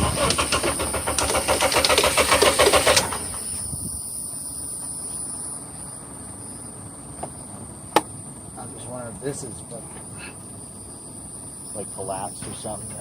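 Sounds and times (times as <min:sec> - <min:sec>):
car engine cranking on starter: 0:00.0 - 0:03.8.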